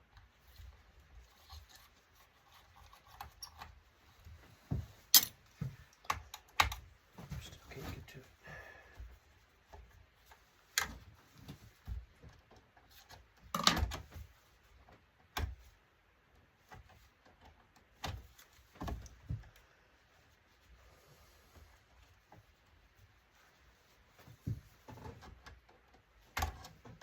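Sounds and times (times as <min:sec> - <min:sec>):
knocks and clicks of tools: 0:04.6 - 0:07.5.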